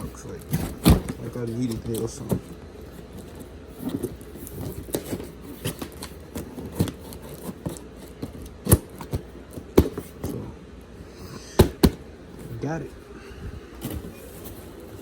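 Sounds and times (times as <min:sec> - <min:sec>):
cardboard packaging rustling: 0:00.0 - 0:10.6, 0:13.7 - 0:15.0
sharp knocks: 0:11.5 - 0:12.0.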